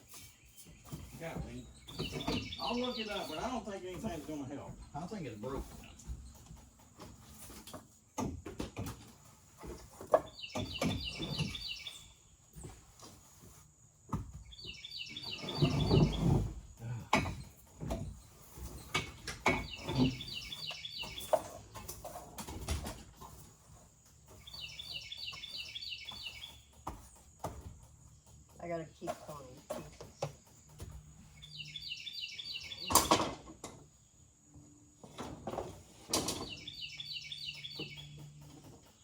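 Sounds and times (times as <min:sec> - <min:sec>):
songbird chirping: 0:00.0 - 0:09.0, 0:09.6 - 0:39.0
knocks and clatter of handling: 0:00.0 - 0:31.4, 0:34.9 - 0:39.0.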